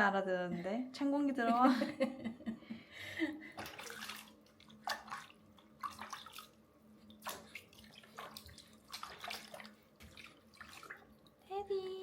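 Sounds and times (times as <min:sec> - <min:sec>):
faint steady hum: 0:00.0 - 0:12.0
water splashing in a bathtub: 0:03.4 - 0:12.0.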